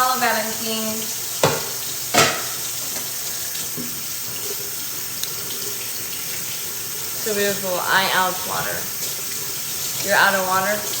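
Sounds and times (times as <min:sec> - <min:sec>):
tap running into sink: 0:01.0 - 0:06.8
sharp knocks: 0:01.4 - 0:02.6.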